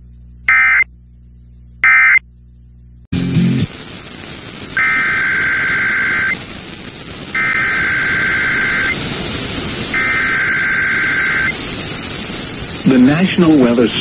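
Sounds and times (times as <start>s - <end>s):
two-tone digital data bursts: 0.5s - 0.9s, 4.4s - 13.3s
radio hiss: 3.2s - 14.0s.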